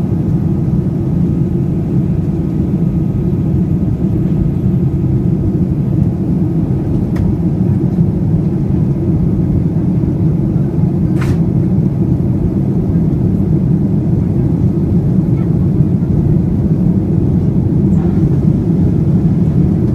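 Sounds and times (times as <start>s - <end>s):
jet engine rumble in cabin: 0.0s - 19.9s
sharp click: 11.2s - 11.4s.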